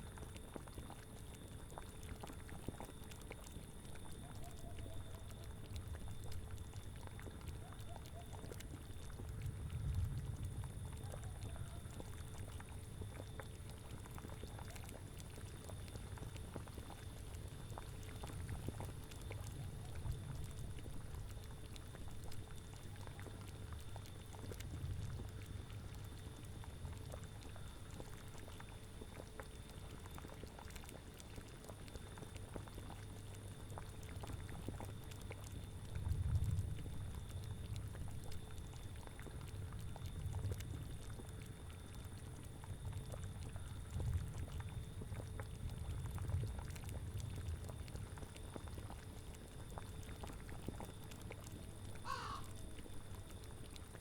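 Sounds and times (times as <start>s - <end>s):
thick liquid bubbling and popping: 0.0s - 54.0s.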